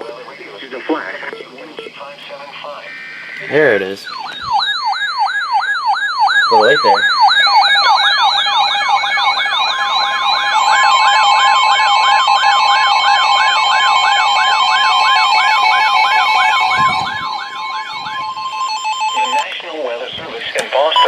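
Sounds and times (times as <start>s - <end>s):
electronic siren sweeping down: 2.8s - 19.6s
steady alert tone: 6.1s - 12.0s.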